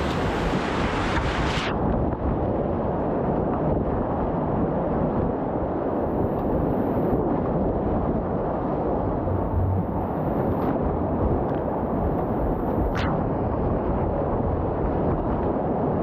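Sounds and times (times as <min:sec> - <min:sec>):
muffled whitewater rushing: 0:00.0 - 0:16.0.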